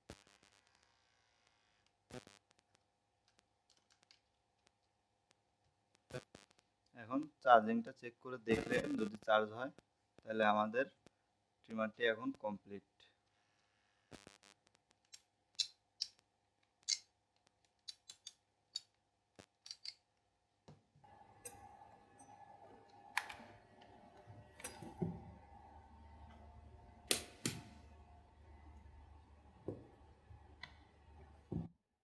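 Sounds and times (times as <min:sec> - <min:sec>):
faint steady hum: 0:21.0 - 0:31.7.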